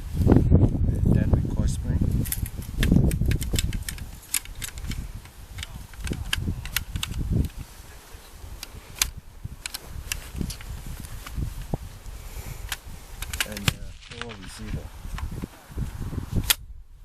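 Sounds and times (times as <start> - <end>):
rifle parts clicking: 2.2 - 7.6, 8.6 - 10.7, 12.6 - 14.6.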